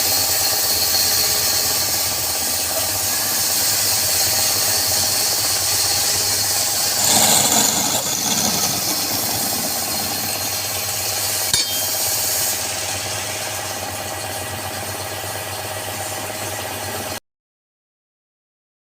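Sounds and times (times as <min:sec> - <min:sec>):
wood lathe motor hum: 0:06.2 - 0:11.0.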